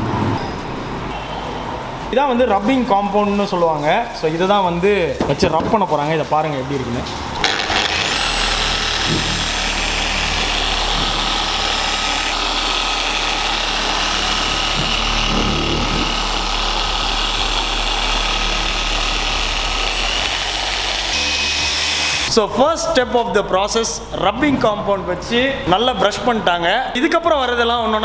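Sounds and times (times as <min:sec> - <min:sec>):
car polishing machine running: 0:07.3 - 0:22.4.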